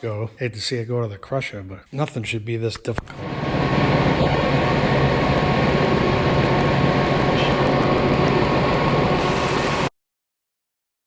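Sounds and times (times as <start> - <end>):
mechanical drone with whine: 3.2 - 9.9.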